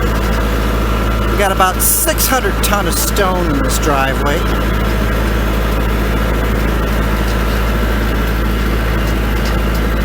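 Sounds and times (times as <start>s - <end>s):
tractor diesel engine running: 0.0s - 10.0s.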